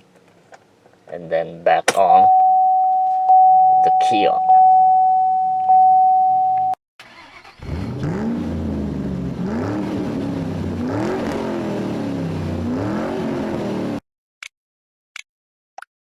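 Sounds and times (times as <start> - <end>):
car engine revving: 7.0 - 14.0.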